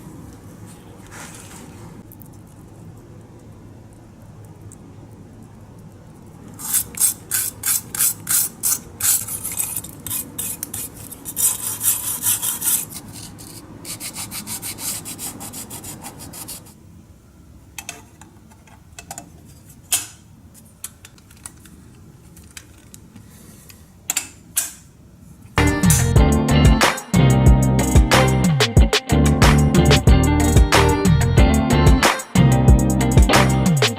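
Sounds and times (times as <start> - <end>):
rasping hand-rubbing strokes: 6.6 - 16.8.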